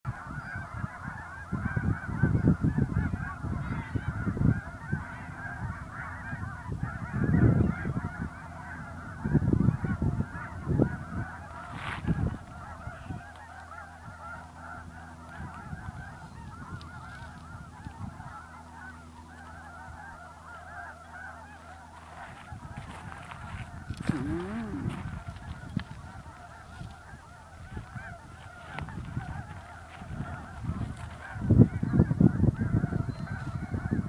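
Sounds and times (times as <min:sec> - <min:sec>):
flock of waterbirds calling: 0:00.1 - 0:34.0
loud low rumbles: 0:23.2 - 0:25.4.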